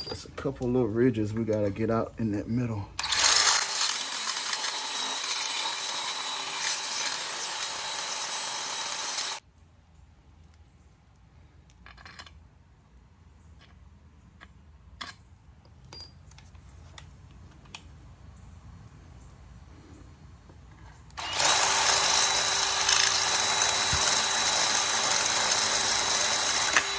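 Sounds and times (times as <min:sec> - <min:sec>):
handheld power tool grinding: 0:03.0 - 0:09.4, 0:21.2 - 0:26.9.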